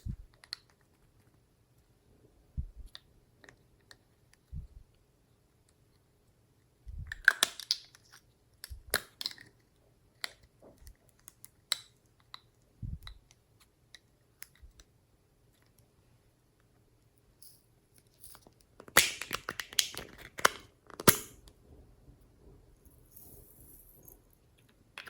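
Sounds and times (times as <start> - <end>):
soft low thumps: 0.0 - 0.3, 2.5 - 2.9, 4.5 - 4.9, 12.8 - 13.1.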